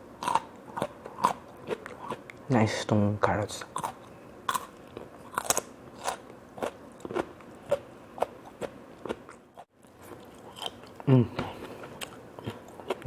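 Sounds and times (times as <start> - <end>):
chewing raw carrot: 3.7 - 13.0.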